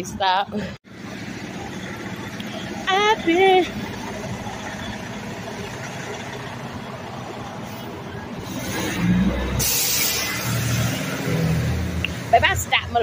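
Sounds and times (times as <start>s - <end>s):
car engine and road hum: 0.0s - 13.0s
burst of hiss: 9.6s - 10.7s.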